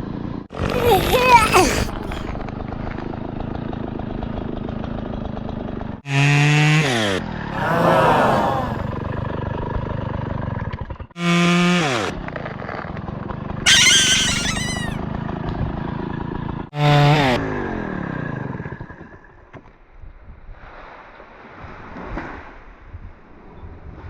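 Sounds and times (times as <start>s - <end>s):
hissy burst with squeaky chirps: 13.7s - 15.0s.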